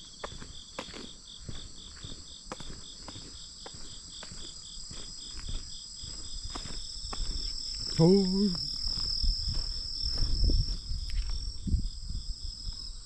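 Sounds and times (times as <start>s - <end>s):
uneven footsteps: 0.0s - 11.6s
insect chirping evenly: 0.0s - 13.0s
insects trilling in grass: 0.0s - 13.0s.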